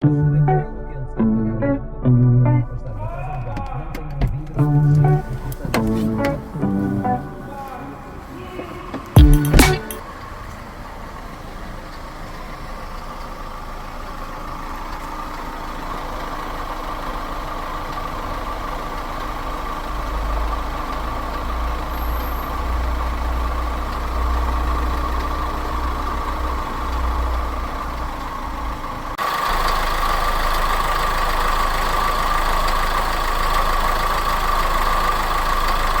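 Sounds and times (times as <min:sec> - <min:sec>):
diesel engine idling: 0:02.9 - 0:36.0
sharp knock: 0:09.2 - 0:10.0.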